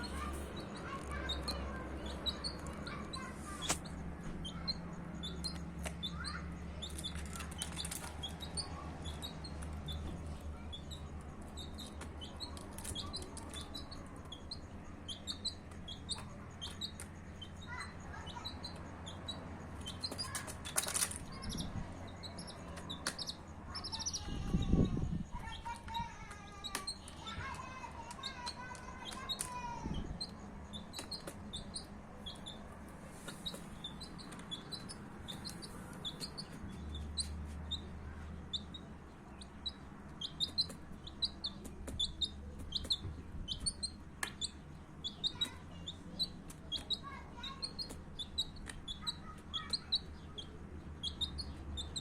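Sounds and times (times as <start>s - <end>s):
chicks peeping: 0.0s - 52.0s.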